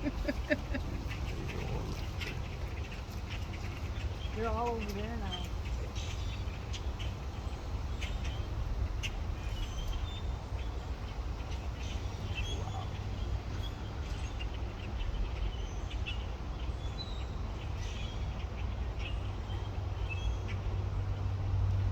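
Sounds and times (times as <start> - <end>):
steady low rumble: 0.0 - 15.6
birds chirping and calling: 0.0 - 20.6.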